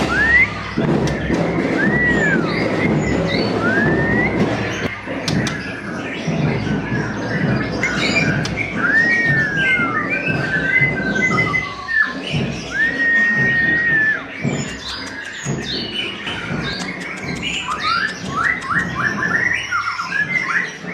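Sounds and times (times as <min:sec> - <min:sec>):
songbird singing: 0:00.0 - 0:20.9.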